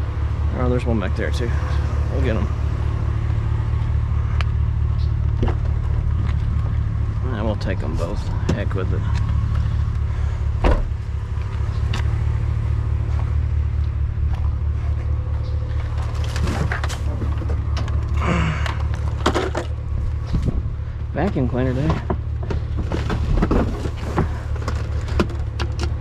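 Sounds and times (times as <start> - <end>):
vehicle engine idling: 0.0 - 26.0
knocks and clatter of items: 15.7 - 20.7, 21.3 - 26.0.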